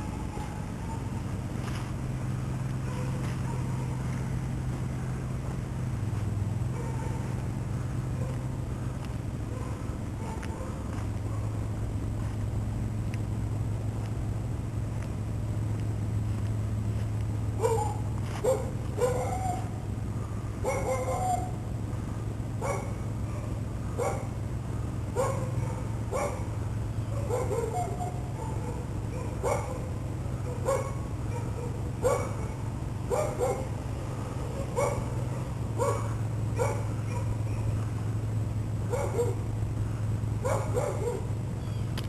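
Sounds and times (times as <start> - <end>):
steady low hum: 0.0 - 42.0
dog barking: 2.8 - 4.2, 6.7 - 7.4, 8.1 - 8.4, 9.5 - 11.7, 17.6 - 19.7, 20.6 - 21.6, 22.6 - 24.4, 25.1 - 26.5, 27.1 - 33.8, 34.4 - 37.8, 38.9 - 39.5, 40.4 - 41.3.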